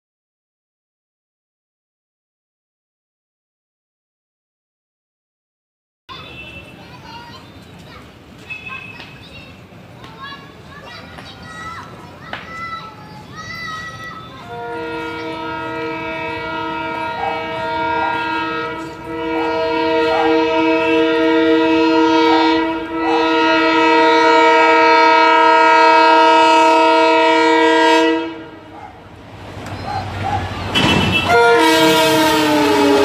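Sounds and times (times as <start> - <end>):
train rushing past: 6.3 - 33.0
locomotive air horn blasts: 14.4 - 28.7, 30.8 - 33.0.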